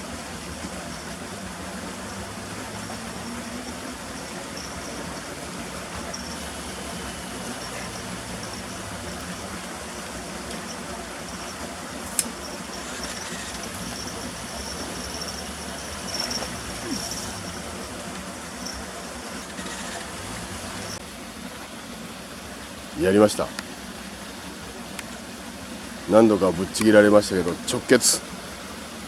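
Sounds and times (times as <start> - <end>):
faint high intermittent tone: 0.0 - 21.0
low hum: 0.0 - 21.0.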